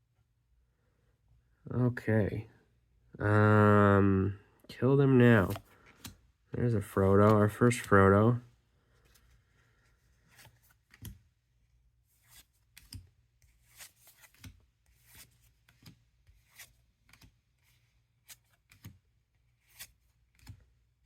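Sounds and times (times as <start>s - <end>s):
paper cards sliding and clicking: 5.3s - 6.2s, 9.0s - 11.2s, 12.2s - 20.7s.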